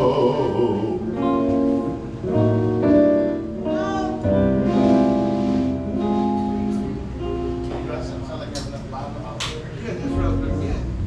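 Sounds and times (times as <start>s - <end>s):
amplified instrument playing held notes: 0.0s - 8.5s.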